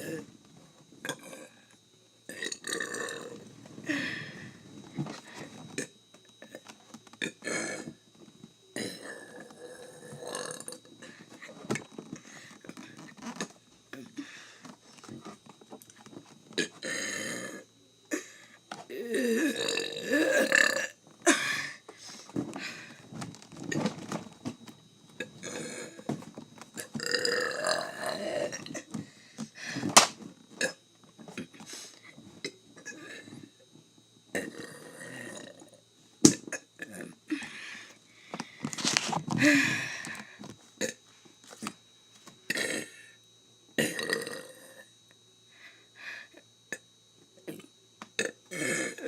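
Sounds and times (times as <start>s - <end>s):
person burping: 0.0s - 0.3s, 1.0s - 1.6s, 2.3s - 4.3s, 5.8s - 8.0s, 8.8s - 11.2s, 16.6s - 21.8s, 25.2s - 26.1s, 26.8s - 28.9s, 30.0s - 30.8s, 34.3s - 35.7s, 40.8s - 41.0s, 42.5s - 43.1s, 43.8s - 44.9s, 47.5s - 49.0s.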